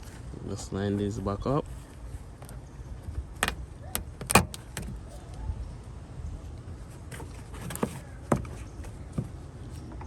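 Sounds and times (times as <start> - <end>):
plastic parts clicking into place: 3.4 - 5.0.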